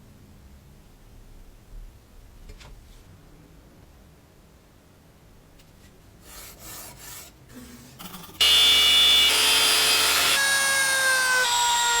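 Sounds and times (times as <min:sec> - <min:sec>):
power tool whining: 0:08.4 - 0:12.0.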